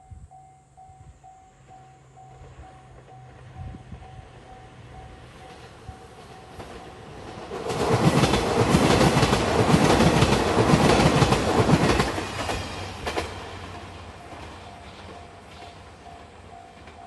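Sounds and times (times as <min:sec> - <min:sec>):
level crossing warning bell ringing: 0:00.1 - 0:07.3, 0:13.6 - 0:17.0
train wheels clacking over rail joints: 0:05.5 - 0:17.0.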